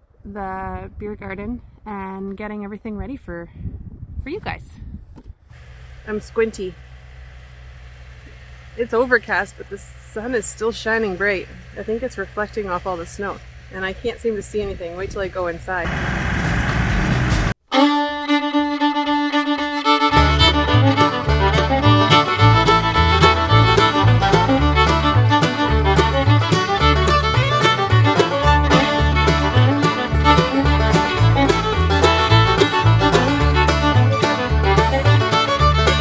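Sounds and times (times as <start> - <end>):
bluegrass fiddle music: 17.6 - 36.0.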